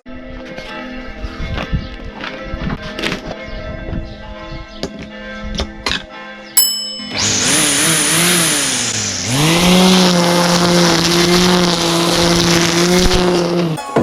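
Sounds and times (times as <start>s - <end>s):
string trimmer motor whine: 6.8s - 13.8s.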